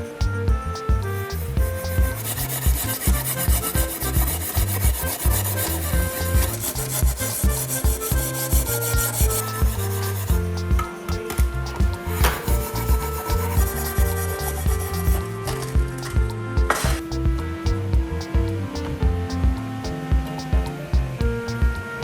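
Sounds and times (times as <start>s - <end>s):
background music with steady beat: 0.0s - 22.0s
filing strokes on hard surface: 1.3s - 17.1s.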